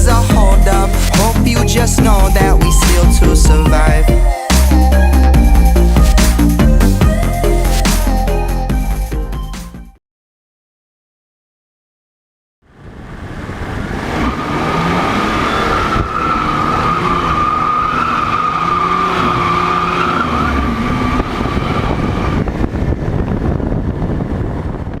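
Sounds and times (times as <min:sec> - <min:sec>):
motorcycle engine whining roar: 0:12.8 - 0:25.0.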